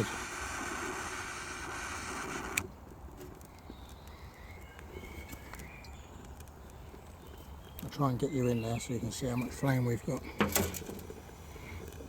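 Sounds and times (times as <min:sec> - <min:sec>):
jet torch lighter hissing: 0:00.0 - 0:02.7
faint bird chirps: 0:03.5 - 0:10.4.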